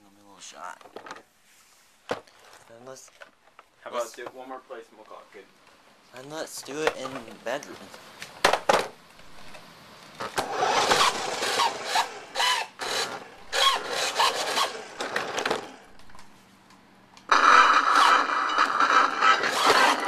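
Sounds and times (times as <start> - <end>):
toy car electric motor whirring: 10.2 - 15.8, 17.3 - 20.0.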